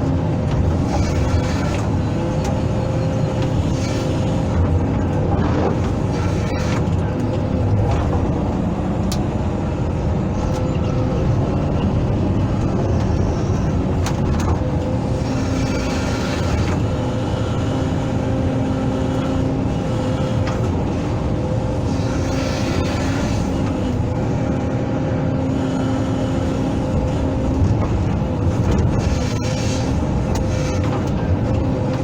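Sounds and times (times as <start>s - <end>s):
excavator diesel engine running: 0.0s - 32.0s.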